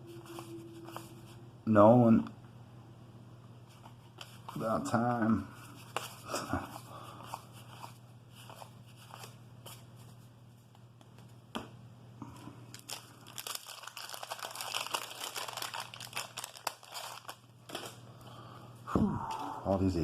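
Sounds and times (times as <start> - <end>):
wax paper wrapper crinkling and tearing: 12.7 - 18.0.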